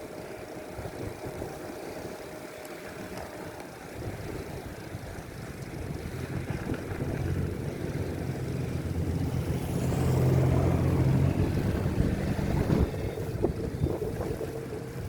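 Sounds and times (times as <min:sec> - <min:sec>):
street noise hiss: 0:00.0 - 0:15.0
vehicle engine passing: 0:06.0 - 0:15.0.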